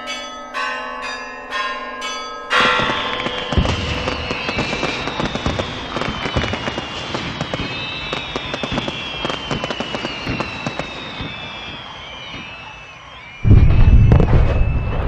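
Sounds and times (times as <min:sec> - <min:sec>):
church bells pealing: 0:00.0 - 0:06.3.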